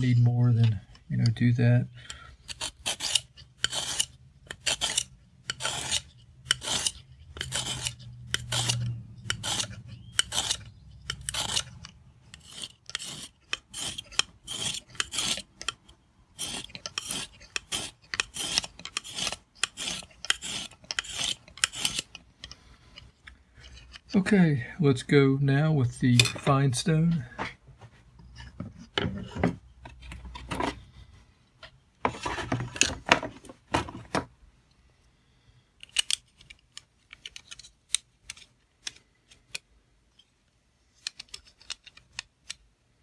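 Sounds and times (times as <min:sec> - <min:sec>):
sharpening stone scraping knife: 0:02.5 - 0:22.1.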